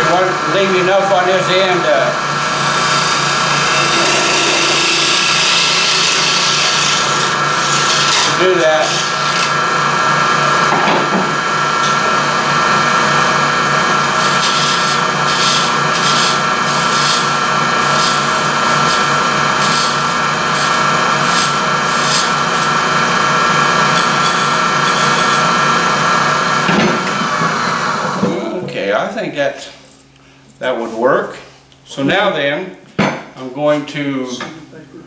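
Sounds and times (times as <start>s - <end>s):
turning tool scraping wood: 0.0s - 10.9s, 11.8s - 28.4s
wood lathe motor hum: 0.0s - 28.5s.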